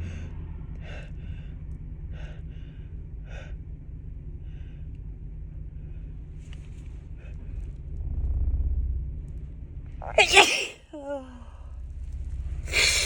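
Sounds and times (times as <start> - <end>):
steady low hum: 0.0 - 13.0
woman gasping breaths: 12.7 - 13.0.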